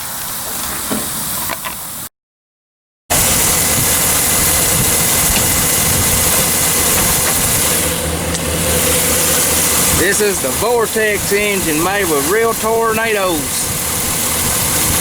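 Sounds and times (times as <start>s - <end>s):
diesel tractor engine idling: 3.1s - 15.0s.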